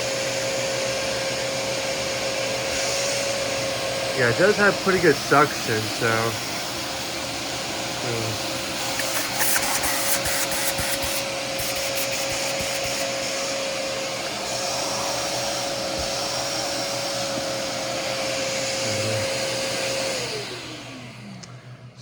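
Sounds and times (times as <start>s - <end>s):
suction motor whining: 0.0s - 21.4s.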